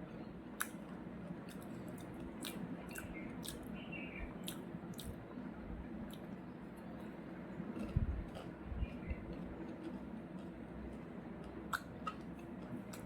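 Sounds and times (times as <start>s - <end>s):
person chewing food: 0.0s - 3.7s, 4.4s - 5.2s, 6.0s - 6.5s, 7.6s - 13.0s.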